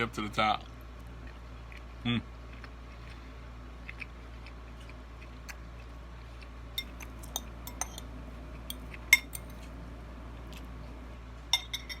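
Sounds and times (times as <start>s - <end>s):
utensil clinking against bowl: 6.8s - 8.1s, 11.5s - 12.0s.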